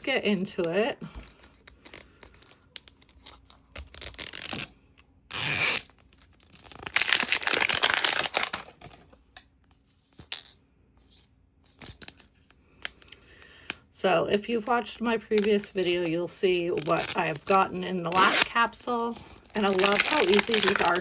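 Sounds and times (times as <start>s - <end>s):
plastic wrapping tearing: 3.0s - 4.7s, 5.3s - 8.8s, 16.7s - 21.0s.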